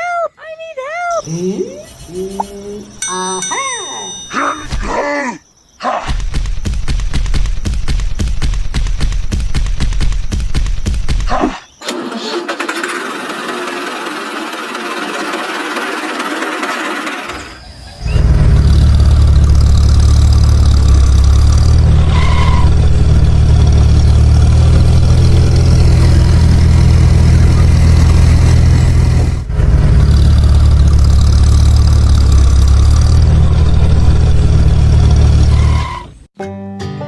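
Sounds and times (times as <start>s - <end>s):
engine running steadily: 11.9s - 35.8s.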